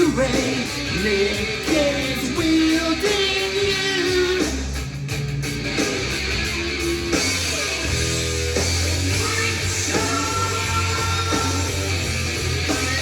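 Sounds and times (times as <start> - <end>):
hard rock song from vinyl record: 0.0 - 13.0.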